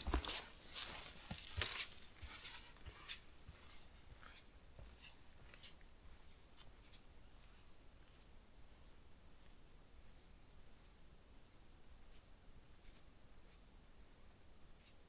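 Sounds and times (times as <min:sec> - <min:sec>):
faint clicks and rustles: 0:00.0 - 0:05.9.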